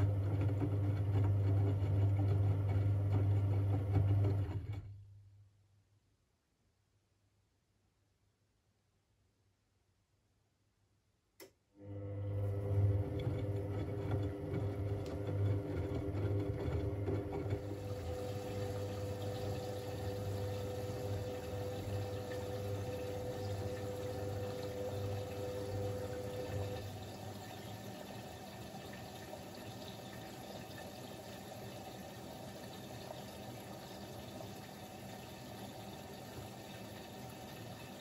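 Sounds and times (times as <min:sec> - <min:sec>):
washing machine water rushing: 0:00.0 - 0:05.0, 0:11.8 - 0:38.0
electrical hum: 0:11.8 - 0:38.0.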